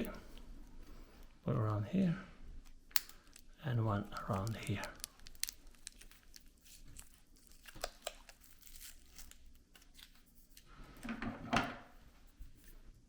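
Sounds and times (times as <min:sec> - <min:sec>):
plastic wrapping crinkling: 0:02.7 - 0:10.7.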